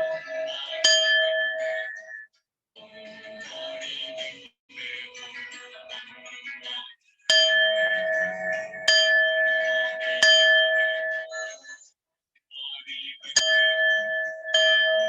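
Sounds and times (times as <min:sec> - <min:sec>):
singing bowl struck with mallet: 0:00.0 - 0:02.2, 0:07.3 - 0:11.4, 0:13.4 - 0:15.0.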